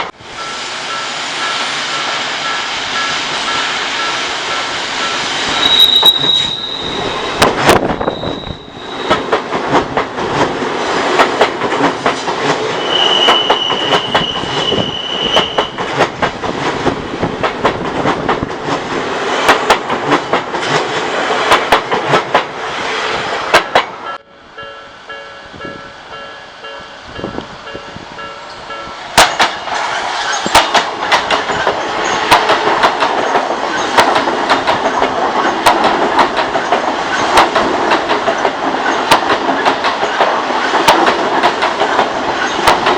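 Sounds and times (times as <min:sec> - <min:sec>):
high-pitched wheel squeals: 0:05.5 - 0:09.3, 0:12.8 - 0:15.8
train wheels clacking over rail joints: 0:07.4 - 0:22.5, 0:23.5 - 0:24.0, 0:29.1 - 0:42.9.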